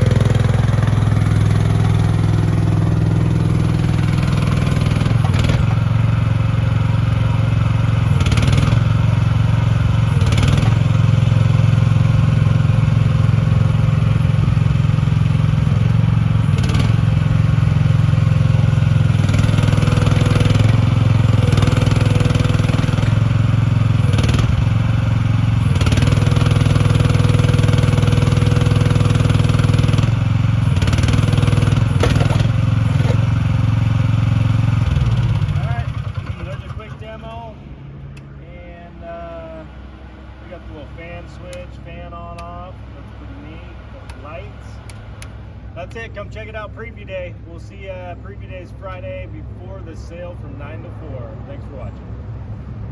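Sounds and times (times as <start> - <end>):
small gasoline engine running: 0.0 - 37.7.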